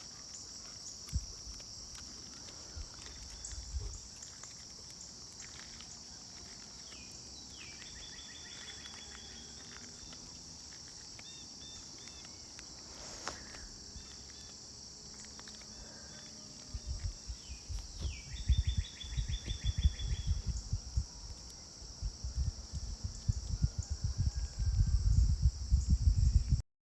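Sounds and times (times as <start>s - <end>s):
crickets and insects chirping: 0.0s - 26.6s
bird singing: 2.2s - 21.8s
wind buffeting microphone: 2.5s - 4.2s, 16.6s - 26.6s.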